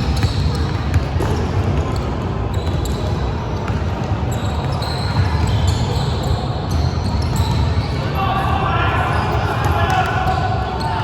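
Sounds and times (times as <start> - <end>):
shoe squeaks: 0.0 - 8.2.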